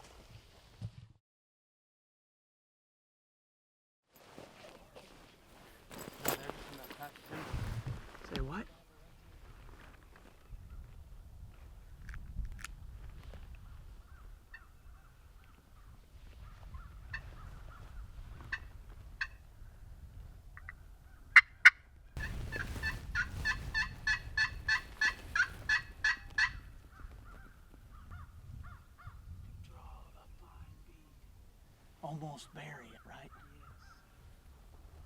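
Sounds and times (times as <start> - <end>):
wild turkey yelping: 14.1 - 19.4, 20.6 - 29.2, 32.5 - 34.2.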